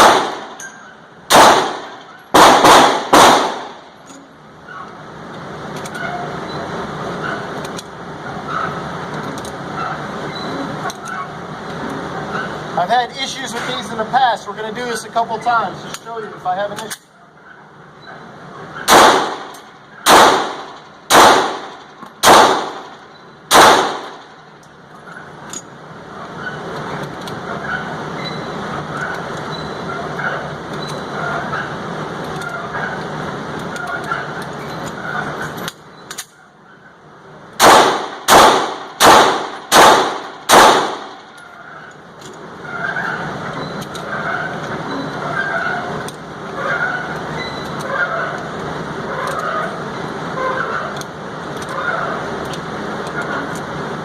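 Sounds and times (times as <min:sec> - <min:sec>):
pistol shots: 0:00.0 - 0:00.6, 0:01.3 - 0:03.8, 0:18.9 - 0:24.3, 0:37.6 - 0:41.4.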